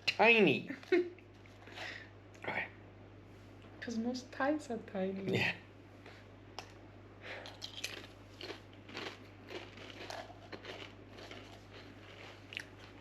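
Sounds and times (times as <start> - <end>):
low steady hum: 0.0 - 13.0
crisps being bitten and chewed: 7.4 - 13.0.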